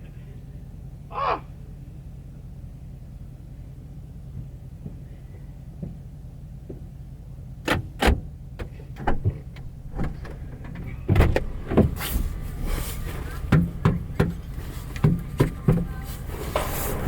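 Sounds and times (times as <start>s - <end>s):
sharp knocks and clunks: 7.7s - 17.0s
steady low rumble: 8.2s - 17.0s.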